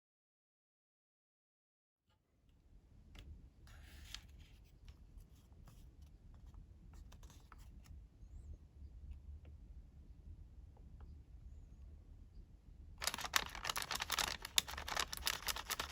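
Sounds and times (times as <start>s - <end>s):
paper rustling: 3.7s - 6.0s, 13.0s - 15.9s
paper crinkling: 13.0s - 15.9s.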